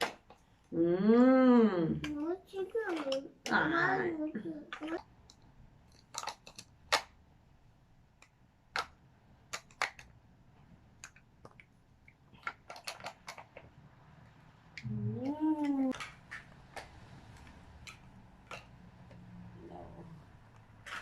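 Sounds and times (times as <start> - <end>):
plastic toy pieces clicking: 2.9 - 3.3, 4.7 - 7.1, 9.5 - 10.2, 11.0 - 13.7.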